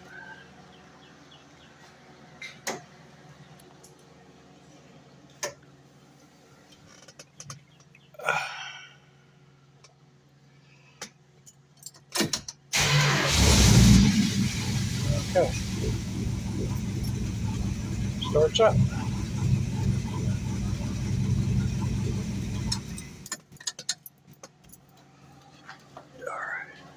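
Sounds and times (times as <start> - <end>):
car engine cranking and starting: 12.7 - 23.5
steady low hum: 13.3 - 23.3.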